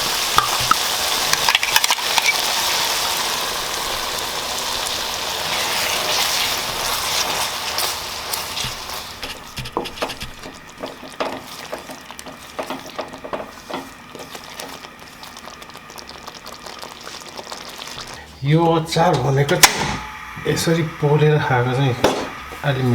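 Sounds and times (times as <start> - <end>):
sizzling in a hot pan: 0.0 - 9.5, 10.2 - 18.1
kitchen utensils clicking and knocking: 0.3 - 2.4.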